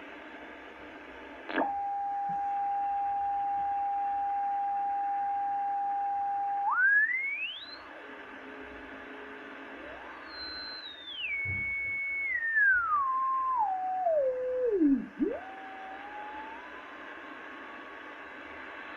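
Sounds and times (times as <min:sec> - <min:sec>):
pure whistling tone: 0:05.7 - 0:07.9, 0:10.0 - 0:16.7
fainter lower steady tone: 0:09.8 - 0:18.9.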